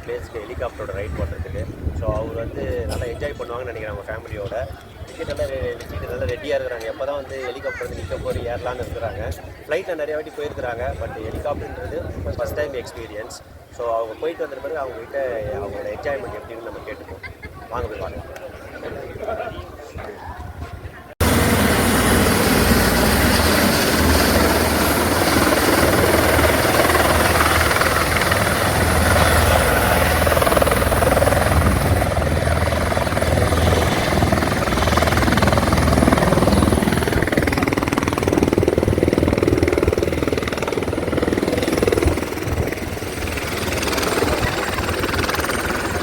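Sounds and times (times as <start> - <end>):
helicopter rotor and engine: 21.2 - 46.0.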